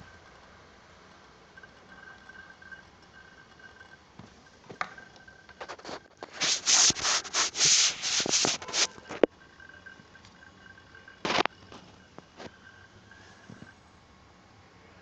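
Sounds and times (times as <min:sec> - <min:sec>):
faint high whine: 0:00.0 - 0:15.0
rough rubbing strokes: 0:05.6 - 0:09.2.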